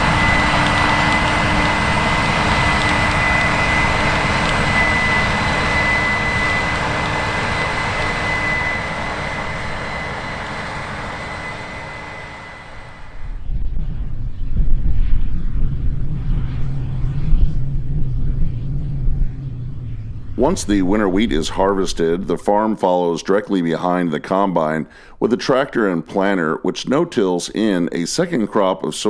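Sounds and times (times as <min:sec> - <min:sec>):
heavy farm machinery running: 0:00.0 - 0:13.2
low rumble: 0:00.0 - 0:22.8
high-pitched mechanical whine: 0:00.0 - 0:22.9.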